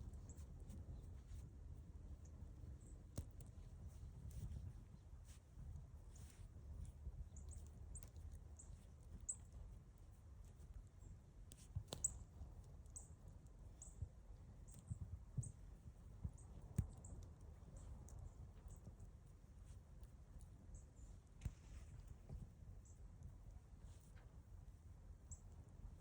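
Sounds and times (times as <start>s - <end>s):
faint high-pitched chirps: 11.9s - 15.6s.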